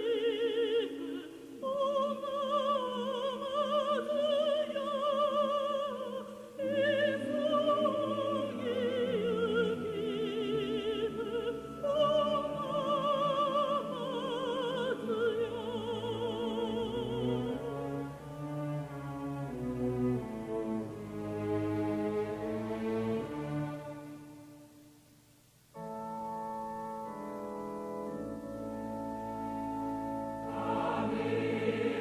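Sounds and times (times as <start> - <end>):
operatic solo voice singing: 0.0 - 17.8
orchestral strings and bass: 6.7 - 24.8, 25.8 - 32.0.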